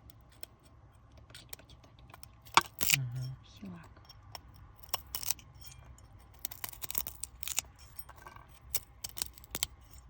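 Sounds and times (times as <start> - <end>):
fruit skin cracking and peeling: 0.0 - 3.1, 4.2 - 7.8, 8.5 - 10.0.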